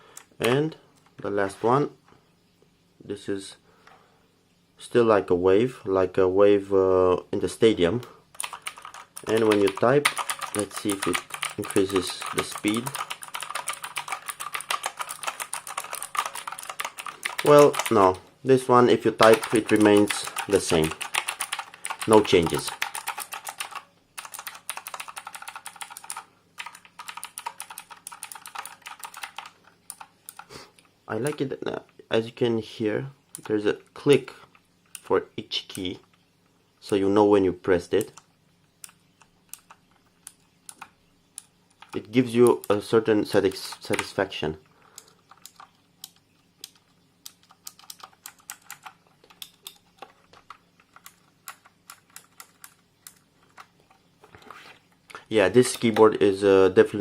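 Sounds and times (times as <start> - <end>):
mechanical keyboard typing clicks: 8.4 - 18.2, 19.2 - 30.5, 38.0 - 44.2, 45.0 - 53.7.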